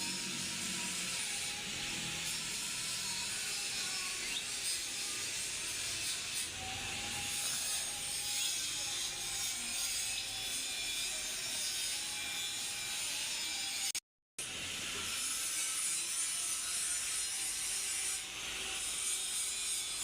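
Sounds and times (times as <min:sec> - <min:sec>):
abrasive rasping on metal: 0:00.0 - 0:14.0.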